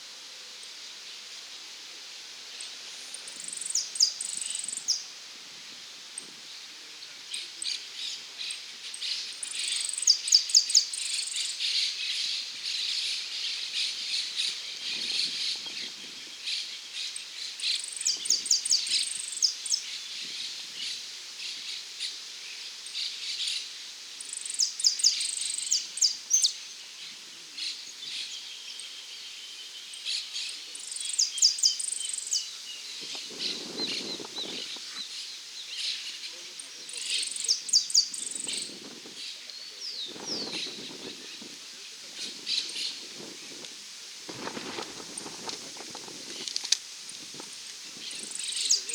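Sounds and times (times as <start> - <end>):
finch singing: 48.1 - 48.9.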